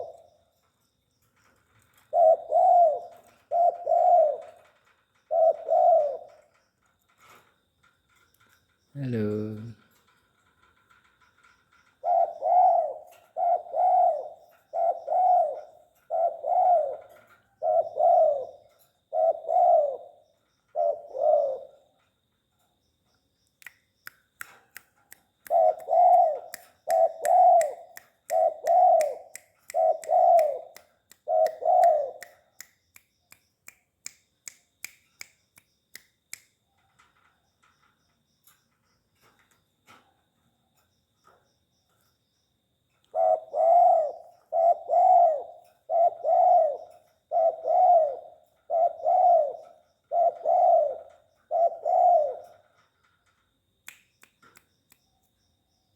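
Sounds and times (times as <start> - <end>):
dove cooing: 0.0 - 0.4, 1.9 - 6.6, 11.8 - 22.0, 25.5 - 32.6, 43.1 - 52.8
sharp clicks: 23.4 - 37.1, 53.8 - 55.1.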